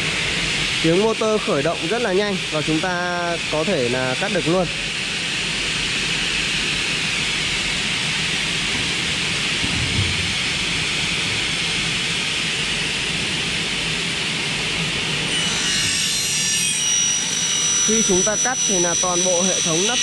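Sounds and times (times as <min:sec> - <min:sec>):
circular saw cutting metal: 0:15.2 - 0:20.0.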